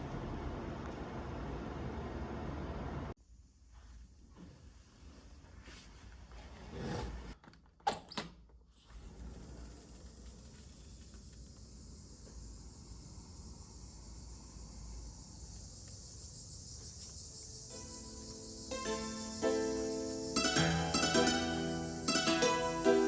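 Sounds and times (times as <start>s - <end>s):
high-pitched insect chorus: 10.0s - 23.0s
plucked-string music: 17.7s - 23.0s.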